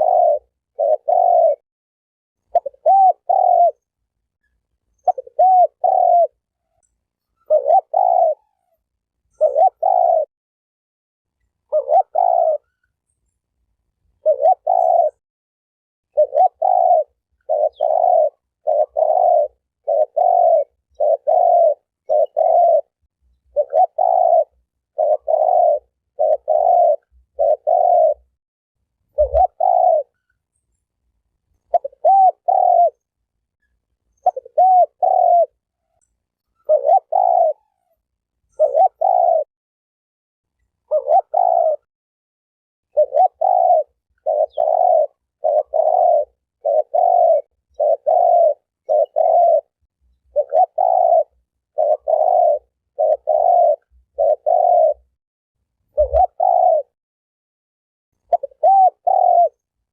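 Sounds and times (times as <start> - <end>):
dove cooing: 0.0 - 1.6, 2.5 - 3.9, 5.0 - 6.8, 7.4 - 10.3, 11.7 - 12.9, 14.2 - 15.2, 16.1 - 28.4, 29.1 - 30.3, 31.6 - 33.1, 34.1 - 36.0, 36.6 - 39.5, 40.8 - 41.9, 42.9 - 55.2, 55.9 - 57.0, 58.2 - 59.7.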